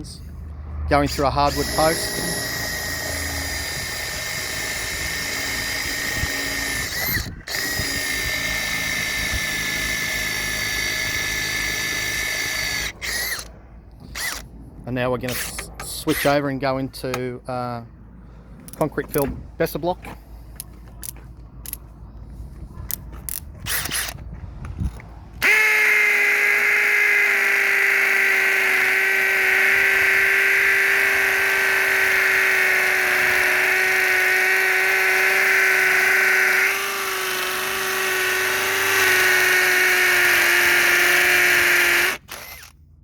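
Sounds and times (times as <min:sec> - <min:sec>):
drill boring into masonry: 0:01.0 - 0:14.5, 0:15.2 - 0:16.4, 0:23.6 - 0:24.2, 0:25.4 - 0:42.8.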